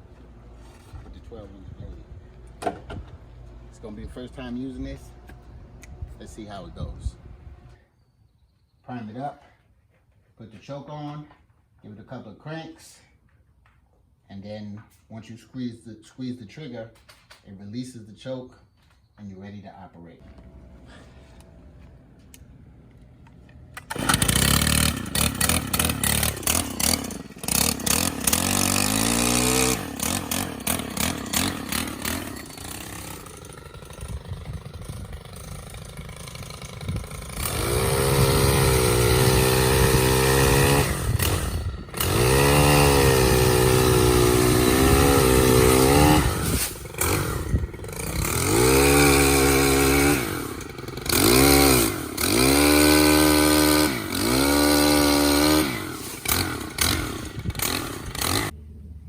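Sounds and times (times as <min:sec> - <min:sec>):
pole saw engine starting and revving: 0:22.3 - 0:58.6.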